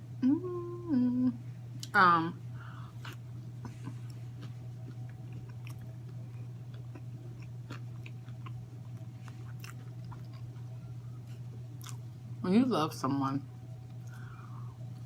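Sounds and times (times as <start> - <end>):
low steady hum: 0.0 - 15.0
person chewing: 3.0 - 3.2, 3.8 - 10.8, 11.8 - 12.0.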